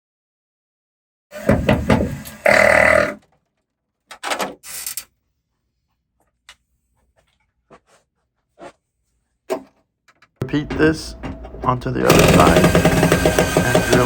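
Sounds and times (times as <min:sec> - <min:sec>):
metallic clatter: 0:10.4 - 0:14.0
power drill driving screw: 0:10.5 - 0:14.0.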